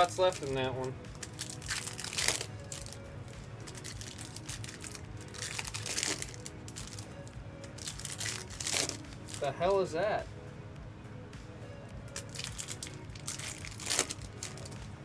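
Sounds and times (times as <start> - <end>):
foil wrappers crinkling: 0.0 - 3.0, 3.6 - 7.1, 7.7 - 9.5, 12.1 - 14.8
cards being handled: 0.0 - 9.5, 12.1 - 14.9
quiet background music: 0.0 - 15.0.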